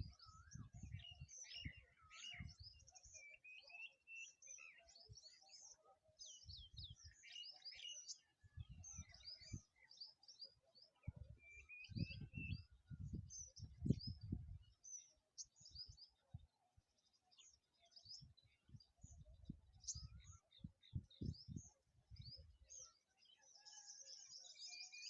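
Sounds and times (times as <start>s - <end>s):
small birds chirping: 0.0s - 25.0s.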